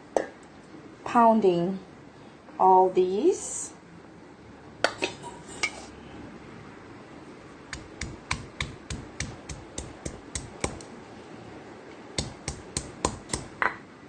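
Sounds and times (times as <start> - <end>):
pestle pounding in mortar: 7.7 - 10.8, 12.2 - 13.7.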